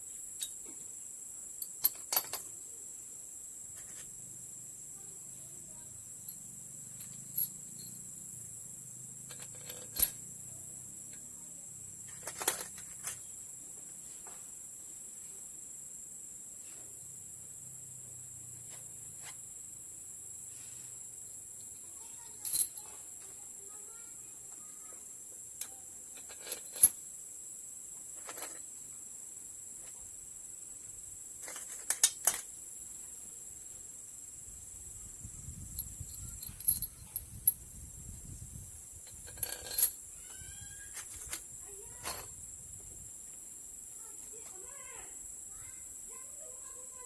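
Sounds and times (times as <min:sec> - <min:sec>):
steady high-pitched hiss: 0:00.0 - 0:47.0
metal tools clinking: 0:01.6 - 0:02.5, 0:06.2 - 0:08.0, 0:09.3 - 0:10.2, 0:12.1 - 0:13.2, 0:22.4 - 0:23.0, 0:26.2 - 0:27.0, 0:28.2 - 0:28.6, 0:35.8 - 0:37.6, 0:39.1 - 0:40.0.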